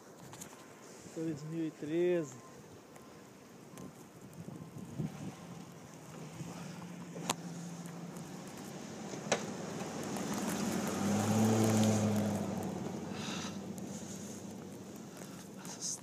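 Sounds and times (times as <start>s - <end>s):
vehicle passing: 4.8s - 15.6s.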